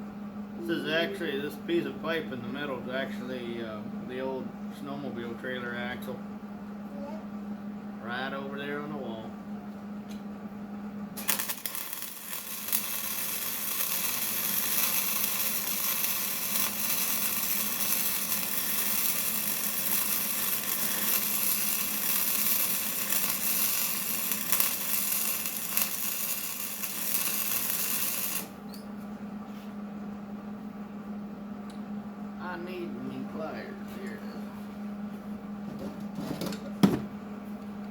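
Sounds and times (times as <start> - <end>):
power tool hissing on steel: 11.2 - 28.5.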